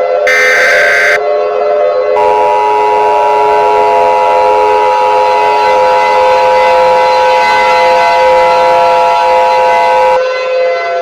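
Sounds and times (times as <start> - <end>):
low siren-like drone: 0.0 - 11.0
two-tone alert signal: 0.3 - 1.2.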